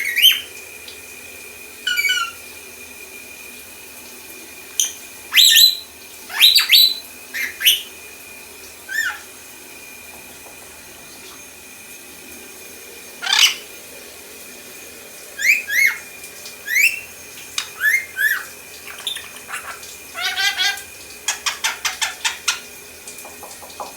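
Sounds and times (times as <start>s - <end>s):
lorikeet whistles and chirps: 1.9s - 2.4s, 4.8s - 7.9s, 16.7s - 17.0s, 17.7s - 20.8s.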